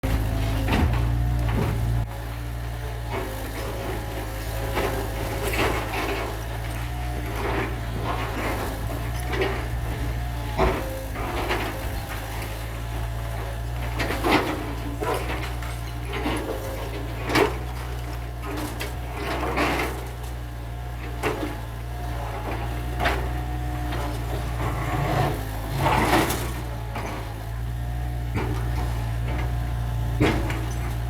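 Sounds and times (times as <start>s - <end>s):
machinery engine droning: 0.0s - 31.0s.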